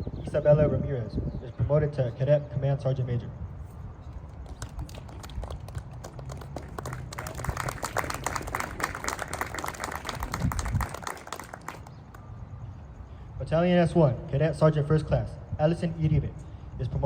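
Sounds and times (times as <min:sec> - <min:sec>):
audience applauding: 0:04.4 - 0:11.9.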